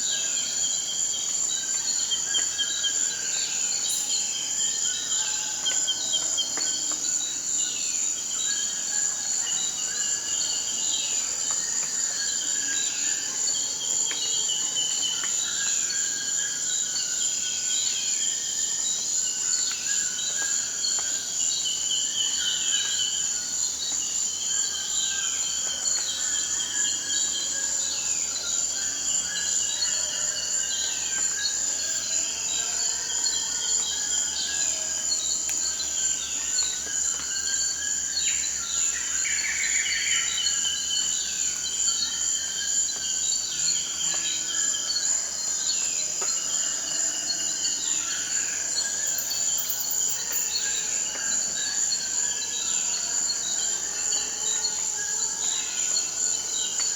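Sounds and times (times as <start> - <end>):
insects droning: 6.8 - 56.9.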